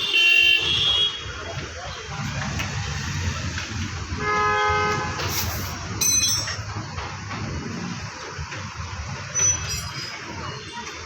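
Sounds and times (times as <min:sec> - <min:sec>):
traffic: 0:00.0 - 0:11.0
workshop noise: 0:00.6 - 0:11.0
vehicle horn: 0:04.2 - 0:05.3
sharp metallic clink: 0:06.0 - 0:06.6.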